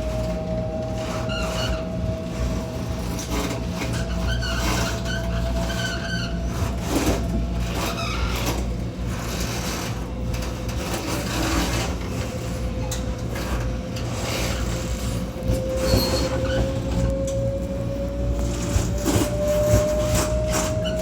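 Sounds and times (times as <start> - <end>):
train rumble: 0.0 - 21.0
steady whine: 12.0 - 21.0.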